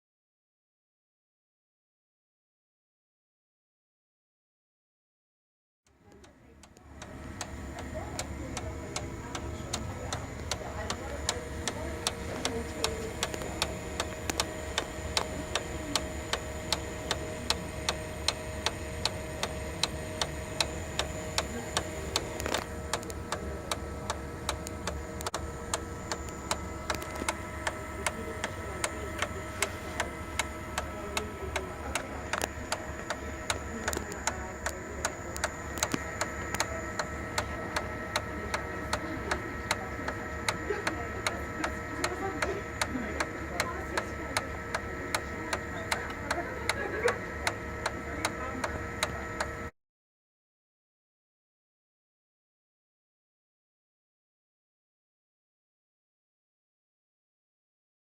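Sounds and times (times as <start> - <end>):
copier humming: 6.0 - 49.7
loud regular ticking: 6.6 - 49.5.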